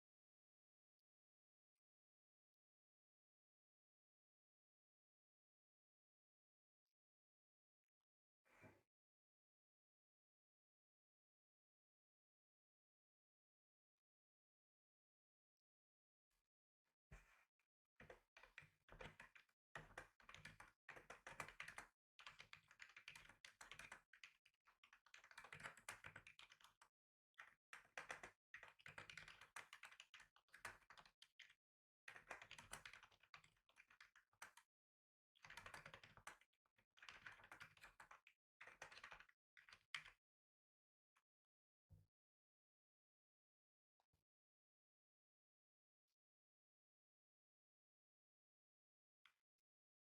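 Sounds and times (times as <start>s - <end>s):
computer keyboard typing: 18.5s - 26.8s, 27.8s - 31.5s, 32.2s - 34.6s, 35.5s - 36.4s, 37.0s - 39.8s.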